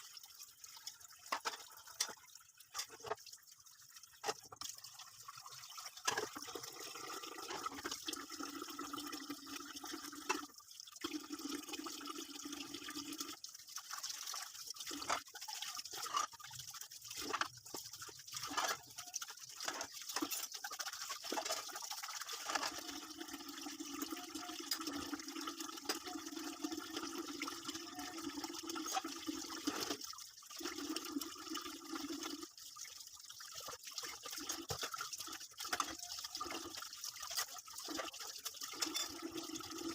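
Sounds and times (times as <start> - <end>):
water running into sink: 0.0 - 39.9
dishes knocking and clattering: 38.7 - 39.3.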